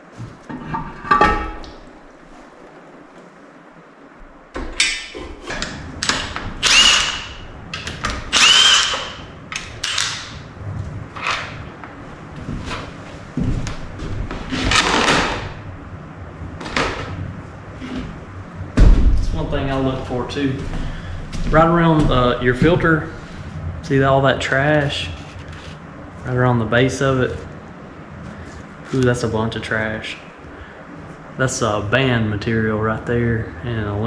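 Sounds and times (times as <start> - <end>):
power drill running in bursts: 6.6 - 7.4, 8.3 - 9.2, 9.8 - 10.2.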